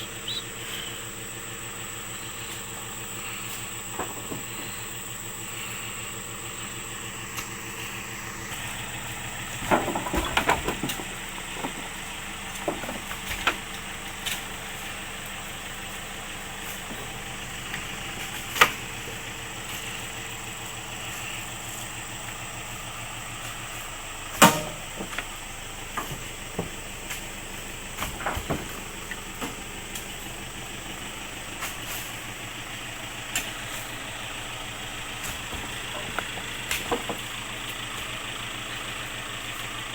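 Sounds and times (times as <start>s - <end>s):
vehicle engine idling: 0.0s - 39.9s
sharp knocks and clanks: 3.9s - 4.7s, 9.5s - 14.4s, 24.3s - 25.3s, 35.2s - 37.8s.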